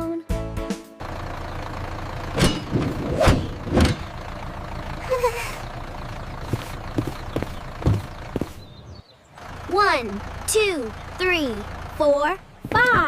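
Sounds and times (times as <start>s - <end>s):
bus engine running: 0.0s - 13.0s
sharp knocks: 2.4s - 4.1s.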